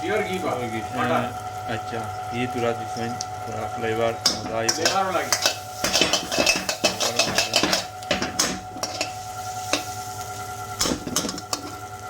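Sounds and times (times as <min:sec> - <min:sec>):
chicken sizzling: 0:00.0 - 0:12.0
spoon scraping in a pan: 0:04.2 - 0:10.0.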